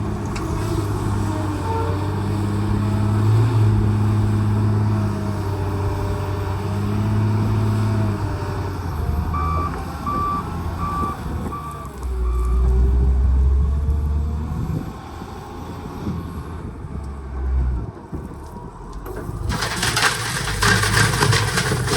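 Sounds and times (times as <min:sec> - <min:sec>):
diesel engine running: 0:00.0 - 0:14.0, 0:16.6 - 0:21.9
reversing alarm beeping: 0:09.3 - 0:12.7.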